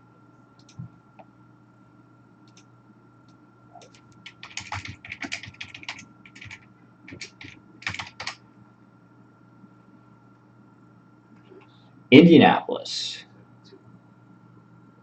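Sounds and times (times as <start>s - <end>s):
keyboard typing: 3.8s - 8.4s.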